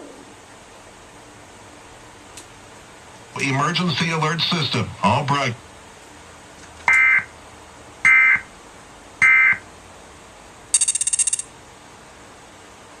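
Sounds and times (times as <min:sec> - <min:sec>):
digital data tone bursts: 0:10.8 - 0:11.5
rapid pulsing high-pitched buzz: 0:10.8 - 0:11.5.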